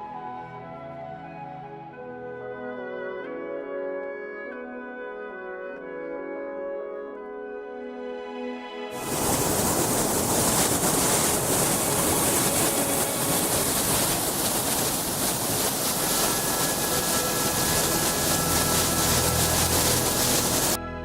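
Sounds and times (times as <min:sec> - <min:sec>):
waterfall rushing: 0:09.0 - 0:20.8
faint musical tones: 0:09.0 - 0:21.0.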